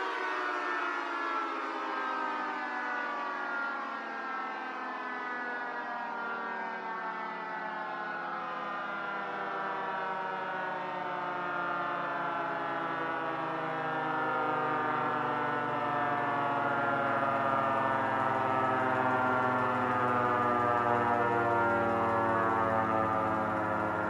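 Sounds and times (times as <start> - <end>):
miniature sirens wailing: 0.0 - 24.0.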